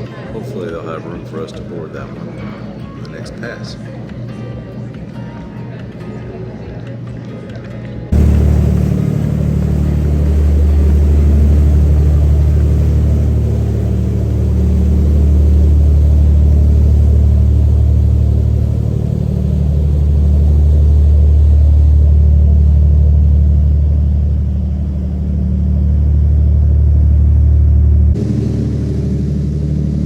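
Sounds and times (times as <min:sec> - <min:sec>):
boat engine droning: 0:08.1 - 0:30.0.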